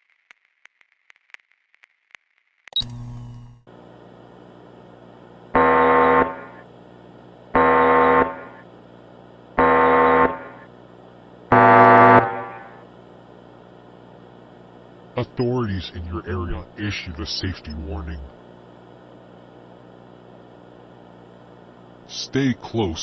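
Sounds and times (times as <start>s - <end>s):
low steady hum: 2.8s - 23.0s
buzzing alarm blasts: 5.5s - 6.7s, 7.5s - 8.7s, 9.6s - 10.8s, 11.5s - 12.9s.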